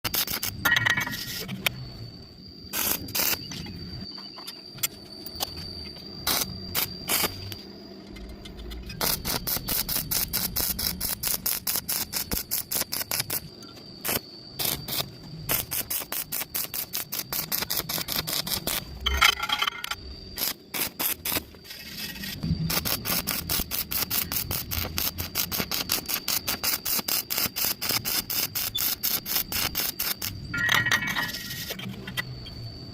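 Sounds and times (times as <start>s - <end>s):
welding arc crackling: 0.0s - 1.4s, 2.7s - 3.4s, 6.3s - 7.6s, 9.0s - 19.0s, 22.6s - 30.4s
steady high whine: 13.4s - 26.9s, 28.6s - 32.9s.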